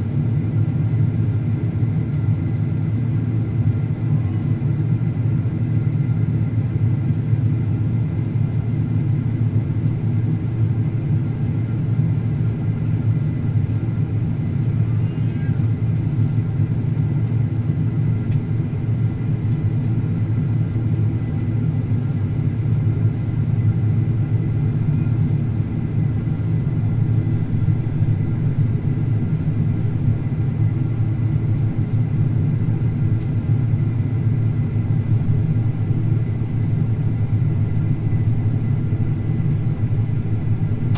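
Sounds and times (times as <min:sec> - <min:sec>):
engine and airflow rumble: 0:00.0 - 0:40.9.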